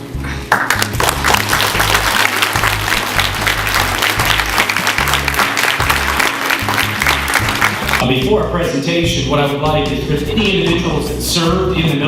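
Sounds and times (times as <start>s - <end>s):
backing music with bass notes: 0.0s - 12.0s
audience applauding: 0.5s - 8.0s.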